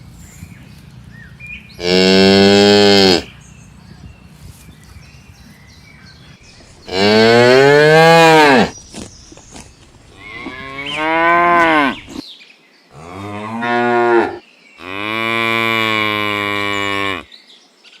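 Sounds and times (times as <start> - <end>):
cow mooing: 1.8 - 3.3, 6.9 - 8.7, 10.2 - 12.2, 13.0 - 17.3.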